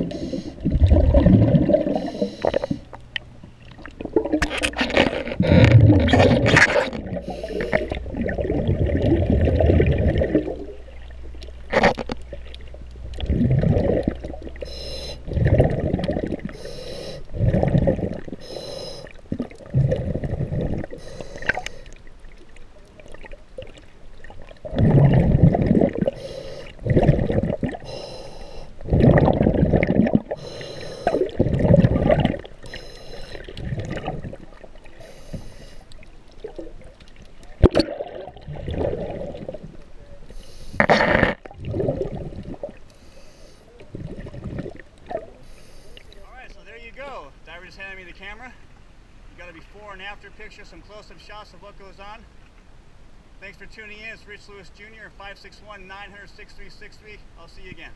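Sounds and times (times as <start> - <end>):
underwater breathing bubbles: 0.0 - 3.0, 3.8 - 11.1, 11.7 - 22.4, 23.0 - 37.0, 37.6 - 46.2.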